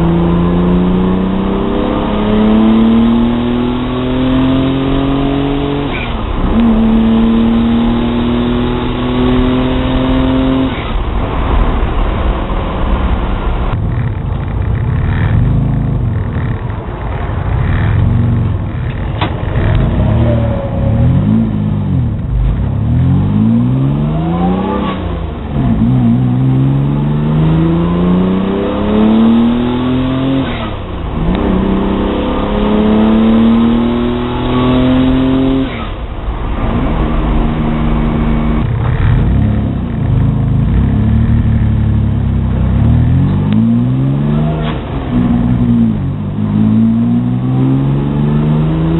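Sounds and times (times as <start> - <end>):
car engine revving under load: 0.0 - 48.9.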